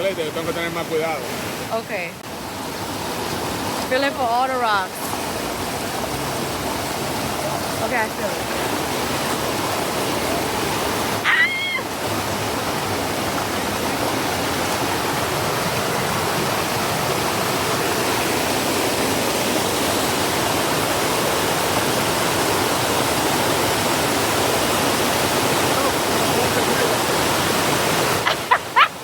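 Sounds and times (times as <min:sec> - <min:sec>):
water cascading over rocks: 0:00.0 - 0:29.0.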